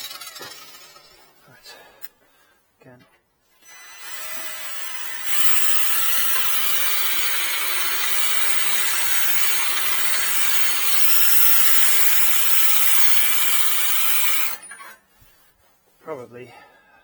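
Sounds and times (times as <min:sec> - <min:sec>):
electric drill drilling: 0:00.0 - 0:01.2, 0:03.6 - 0:14.8.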